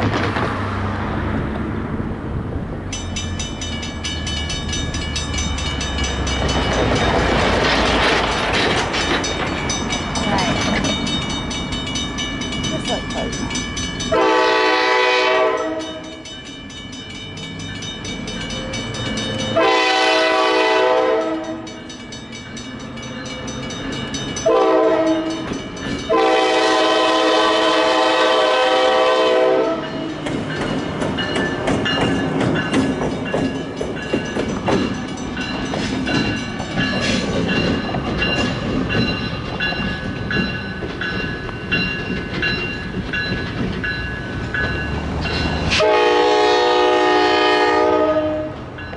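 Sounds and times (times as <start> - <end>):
locomotive rumbling by: 0.0 - 48.9
steady high ringing: 2.9 - 7.3, 8.3 - 14.6, 15.6 - 19.8
wheels clattering over rails: 2.9 - 14.0, 29.7 - 45.8
locomotive air horn blasts: 14.1 - 16.0, 19.6 - 21.7, 24.4 - 25.4, 26.1 - 30.1, 45.8 - 48.6.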